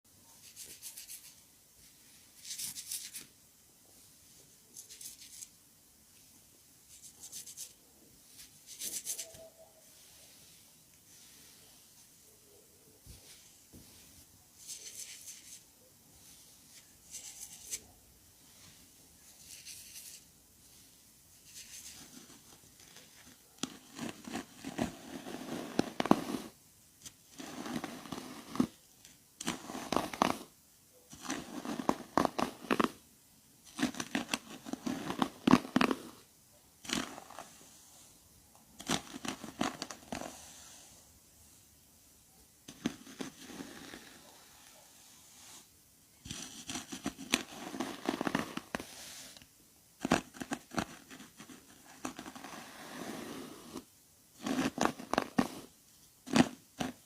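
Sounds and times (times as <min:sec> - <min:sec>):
soft airy hair swishes: 0:08.2 - 0:12.2
crackling crinkling hair strokes: 0:16.2 - 0:28.8, 0:29.4 - 0:30.5, 0:31.1 - 0:33.0, 0:33.7 - 0:38.2, 0:38.8 - 0:41.0, 0:42.7 - 0:45.7, 0:46.3 - 0:49.5, 0:54.4 - 0:57.0.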